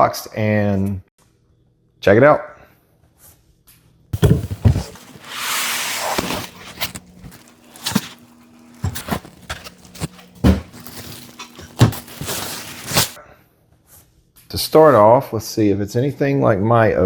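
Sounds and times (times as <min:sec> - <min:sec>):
cardboard box handled: 0:04.2 - 0:13.2
scraping rustle: 0:04.2 - 0:13.2.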